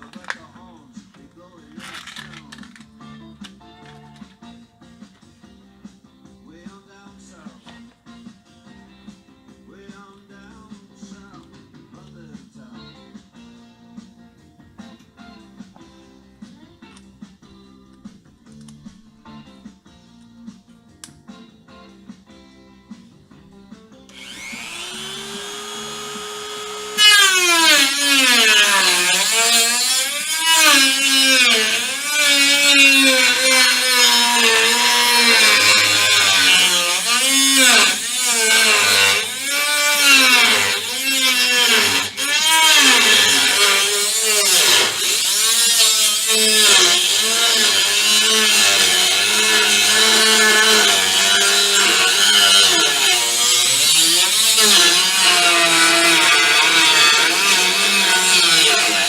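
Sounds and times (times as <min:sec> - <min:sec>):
rotary tool cutting sheet metal: 0:24.1 - 0:59.0.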